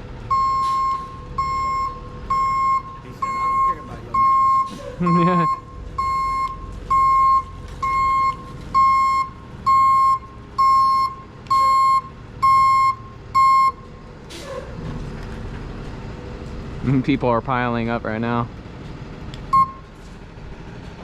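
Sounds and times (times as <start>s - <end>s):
reversing alarm beeping: 0.3s - 13.9s, 19.5s - 19.9s.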